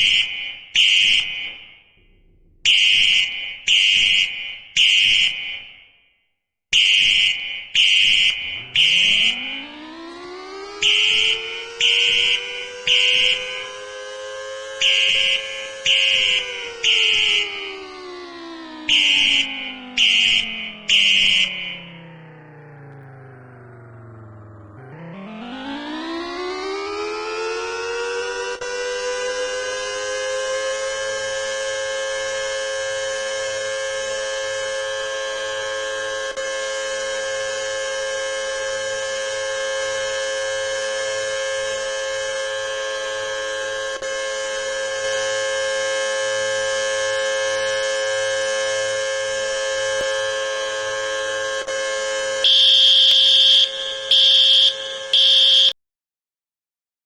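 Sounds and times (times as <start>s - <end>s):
fire alarm beeping: 0.0s - 1.8s, 2.7s - 6.0s, 6.8s - 13.8s, 14.8s - 22.8s, 52.4s - 55.8s
warning siren winding: 0.0s - 5.8s, 6.8s - 31.5s, 52.4s - 55.7s.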